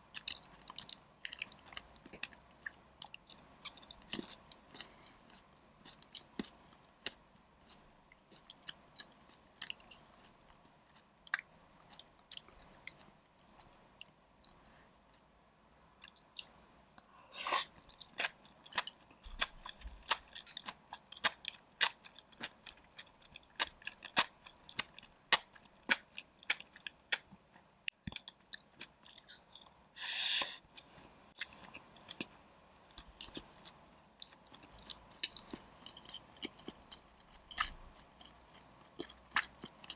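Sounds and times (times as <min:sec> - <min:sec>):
crunchy chewing: 0:17.1 - 0:30.5, 0:31.4 - 0:39.9.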